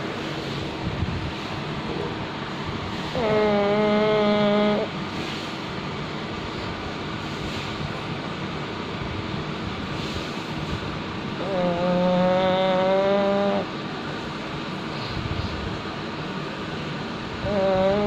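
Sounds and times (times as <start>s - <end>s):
dog snoring: 3.1s - 4.9s, 11.4s - 13.7s, 17.4s - 18.0s.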